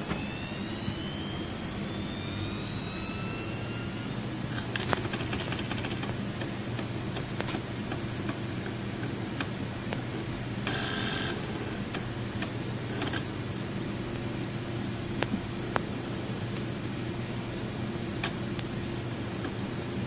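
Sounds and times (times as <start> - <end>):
buzzy burst: 0.0 - 9.9
hard drive humming: 0.0 - 20.0
hard drive heads ticking: 4.2 - 20.0.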